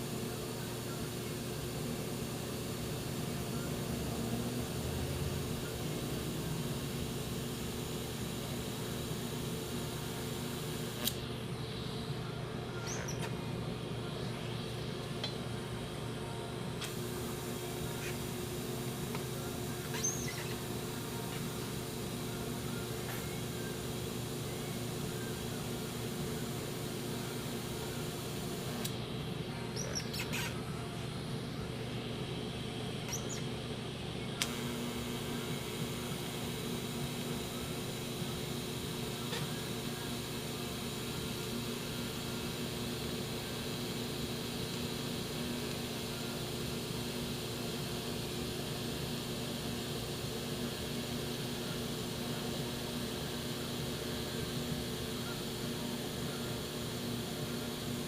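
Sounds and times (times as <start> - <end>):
welding machine humming: 0.0 - 33.7, 34.4 - 58.0
bird chirping: 29.8 - 30.5.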